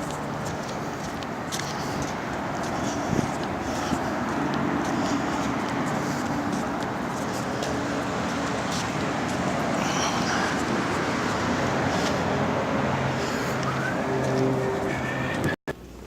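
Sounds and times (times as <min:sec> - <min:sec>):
low engine note: 0:00.0 - 0:16.0
road noise: 0:00.0 - 0:16.0.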